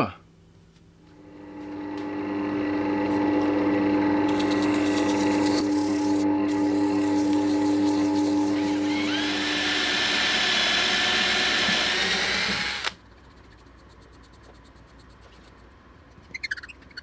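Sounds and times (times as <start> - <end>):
high tool whine: 1.2 - 13.0
power tool humming: 1.2 - 13.0.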